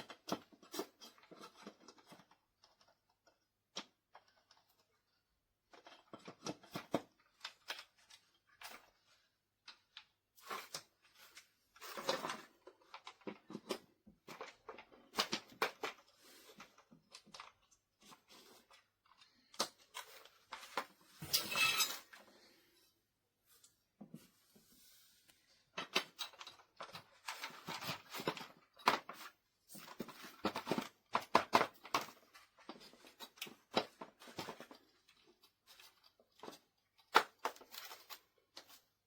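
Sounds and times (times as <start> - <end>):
product handling clicks and knocks: 5.7 - 22.3, 25.7 - 38.8.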